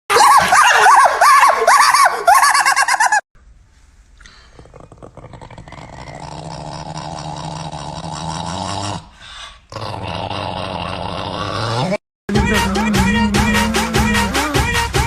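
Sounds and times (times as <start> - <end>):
dog growling: 4.6 - 12.0.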